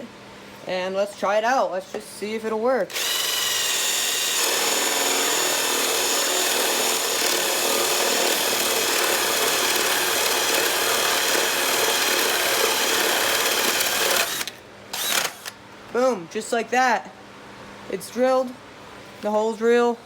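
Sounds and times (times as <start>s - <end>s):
power drill boring through wood: 2.9s - 15.6s.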